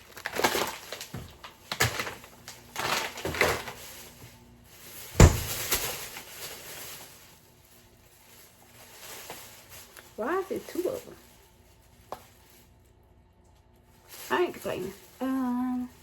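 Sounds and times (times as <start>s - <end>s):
packages knocking and rustling: 0.0s - 12.8s
sharp loud thump: 5.2s - 5.7s.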